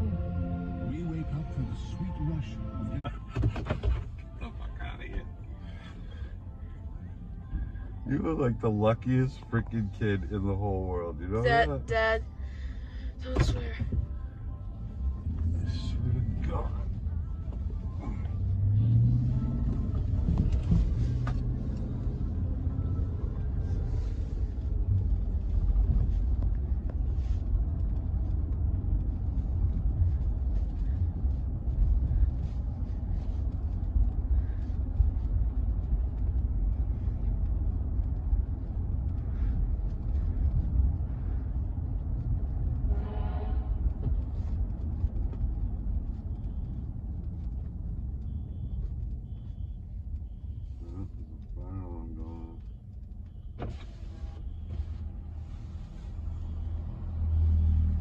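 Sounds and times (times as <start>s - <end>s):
vehicle rumble: 0.0s - 58.0s.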